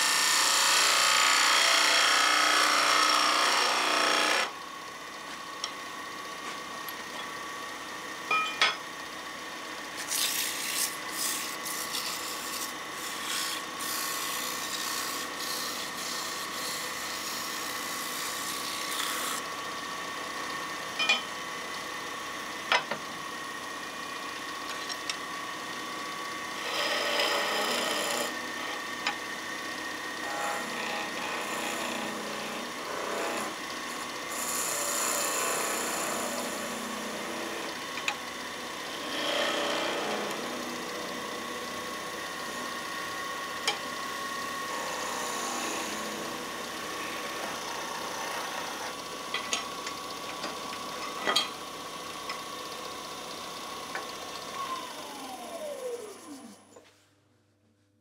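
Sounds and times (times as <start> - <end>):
turning tool cutting wood: 0.0 - 4.6, 9.8 - 20.6, 23.9 - 52.5
wood lathe whine: 0.0 - 56.8.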